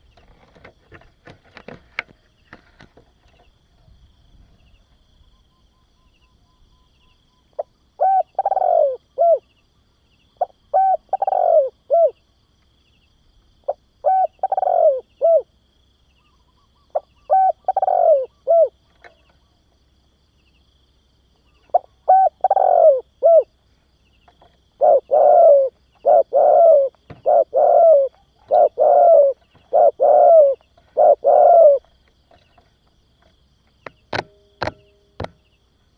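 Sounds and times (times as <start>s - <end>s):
dove cooing: 7.5s - 9.5s, 10.4s - 12.2s, 13.6s - 15.5s, 16.2s - 19.4s, 21.5s - 23.6s, 24.4s - 32.6s.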